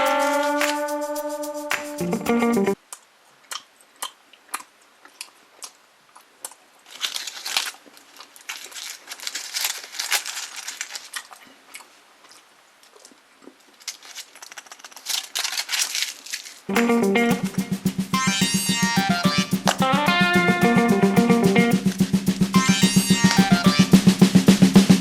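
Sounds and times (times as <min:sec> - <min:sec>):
small clicks and snaps: 0:06.4 - 0:16.6
foil wrapper crinkling: 0:06.8 - 0:11.9, 0:13.6 - 0:16.7.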